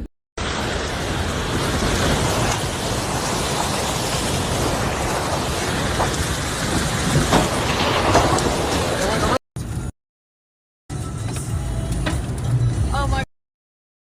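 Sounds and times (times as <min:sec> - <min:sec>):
rain: 0:00.4 - 0:09.9
storm wind: 0:00.4 - 0:09.9.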